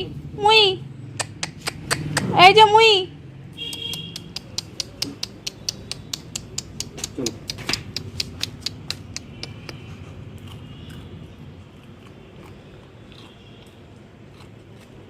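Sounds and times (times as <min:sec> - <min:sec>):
puppy crunching puffed rice: 0:04.2 - 0:15.0.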